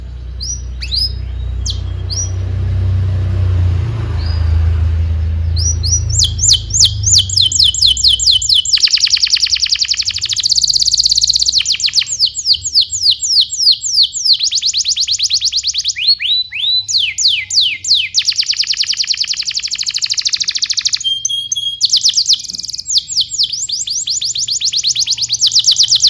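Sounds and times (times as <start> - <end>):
low rumble: 0.0 - 8.6
canary singing and trilling: 0.0 - 26.0.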